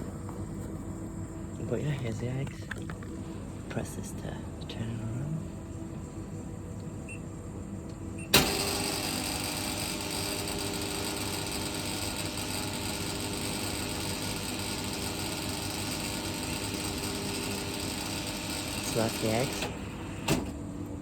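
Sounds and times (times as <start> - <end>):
electric motor running: 8.4 - 20.3.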